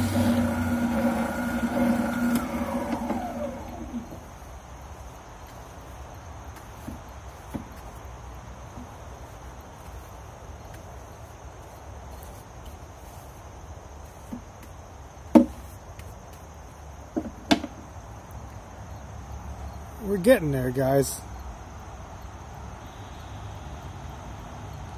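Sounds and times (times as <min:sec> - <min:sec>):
spindle sander humming: 0:00.0 - 0:04.4
sharp knocks: 0:15.3 - 0:15.6.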